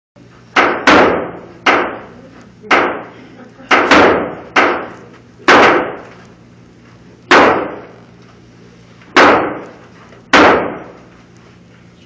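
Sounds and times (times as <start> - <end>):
gunshots echoing: 0.6 - 2.1, 2.7 - 3.1, 3.7 - 6.1, 7.3 - 8.0, 9.2 - 11.1.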